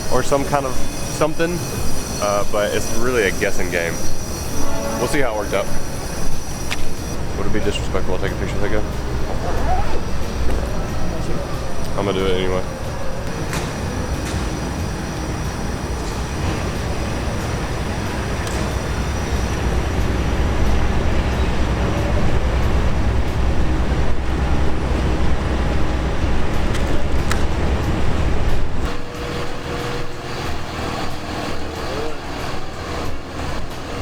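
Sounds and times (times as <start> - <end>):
heavy traffic rumble: 0.0 - 34.0
light street noise: 0.0 - 34.0.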